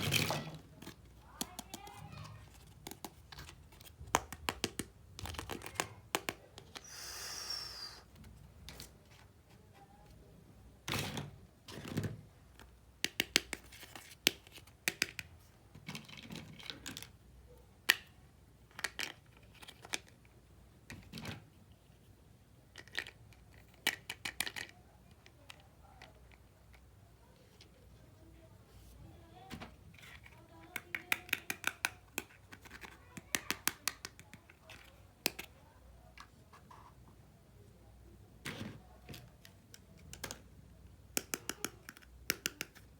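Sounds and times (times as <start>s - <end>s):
plastic toy pieces clicking: 30.0s - 35.5s, 41.1s - 42.9s.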